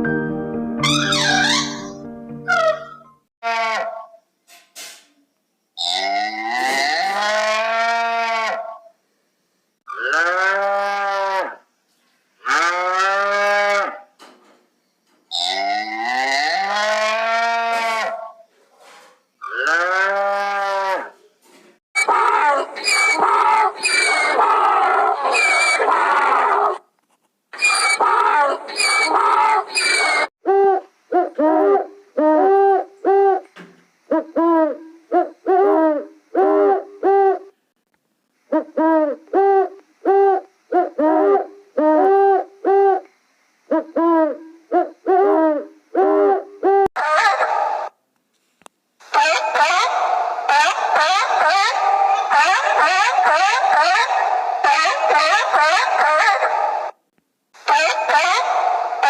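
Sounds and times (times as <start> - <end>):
harsh noisy animal call: 0.8 - 1.9, 2.5 - 4.2, 5.8 - 8.9, 12.4 - 14.1, 15.3 - 18.4, 19.4 - 21.2, 22.0 - 26.8, 27.6 - 33.5, 43.7 - 48.0, 49.1 - 57.0, 57.6 - 59.0
cattle-like mooing calls: 5.9 - 8.8, 9.9 - 11.6, 12.5 - 14.0, 15.4 - 18.3, 19.4 - 21.2.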